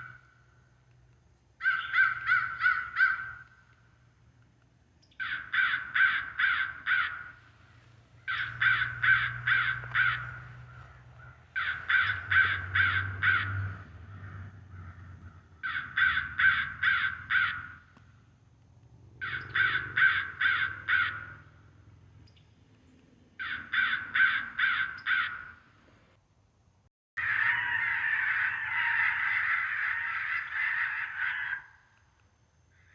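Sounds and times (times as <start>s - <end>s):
electronic crow caws: 0.0s - 0.6s, 1.6s - 3.9s, 5.2s - 7.5s, 8.2s - 18.2s, 19.2s - 21.8s, 23.4s - 25.7s, 27.2s - 32.1s.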